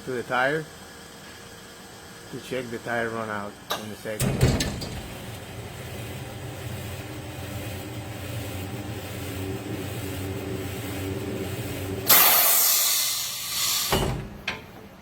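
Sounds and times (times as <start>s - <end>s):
wheel balancer motor hum: 4.6s - 12.2s
loud hiss: 12.0s - 14.2s.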